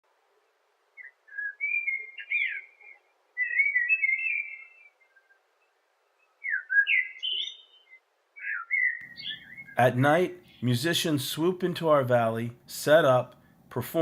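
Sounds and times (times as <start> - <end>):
bird-like whistled song: 1.0 - 9.8.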